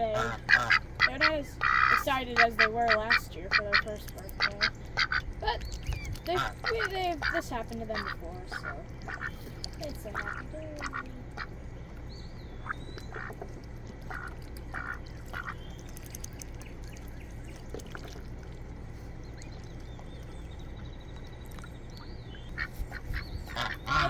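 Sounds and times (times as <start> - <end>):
ducks quacking softly: 0.0 - 11.7, 12.6 - 17.0, 21.5 - 24.0
low background rumble: 0.0 - 24.0.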